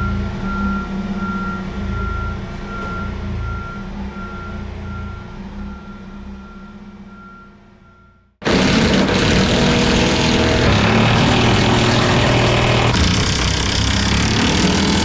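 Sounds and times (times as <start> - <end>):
engine running: 8.4 - 15.0.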